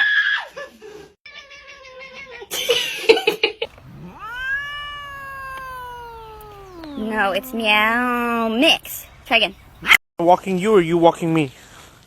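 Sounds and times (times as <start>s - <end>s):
cat yowling and meowing: 3.7s - 8.8s.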